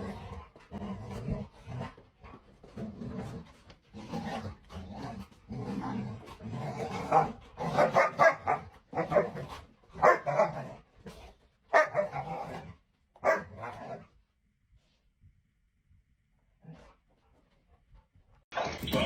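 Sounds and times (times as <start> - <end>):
dog growling: 0.0 - 14.1
dog barking: 7.1 - 9.4, 10.0 - 10.6, 11.7 - 12.2, 13.2 - 13.9.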